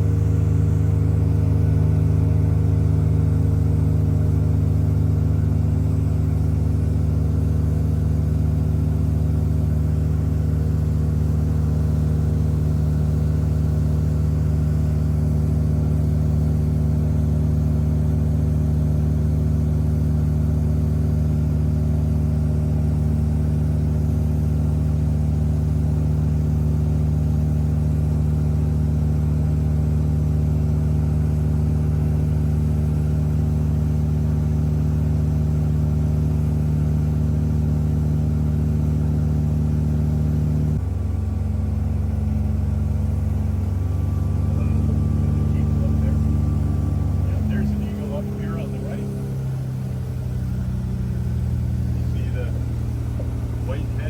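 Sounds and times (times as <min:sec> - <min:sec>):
boat engine drone: 0:40.8 - 0:54.0.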